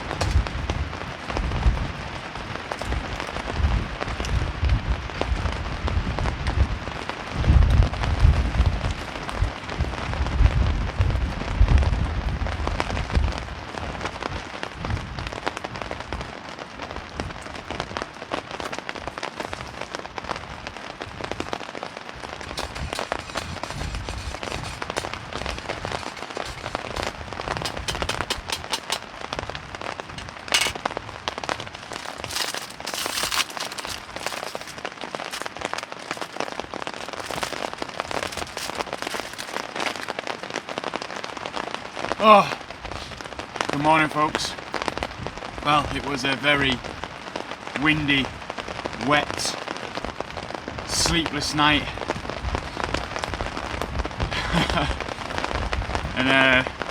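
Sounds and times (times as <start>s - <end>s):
wind buffeting microphone: 0.0s - 18.0s, 20.4s - 35.8s, 51.9s - 56.9s
heavy rain: 0.0s - 56.9s.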